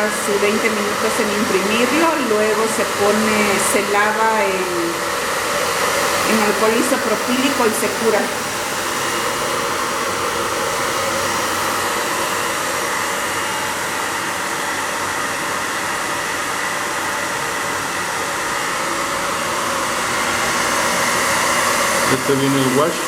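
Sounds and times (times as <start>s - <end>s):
hot-air blower running: 0.0s - 23.0s.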